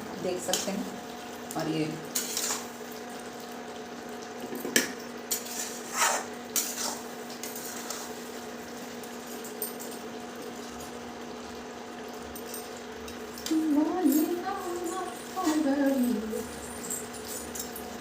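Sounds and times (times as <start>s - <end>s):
low background hum: 0.0s - 18.0s
spoon scraping a pan: 2.2s - 2.7s, 5.3s - 8.2s.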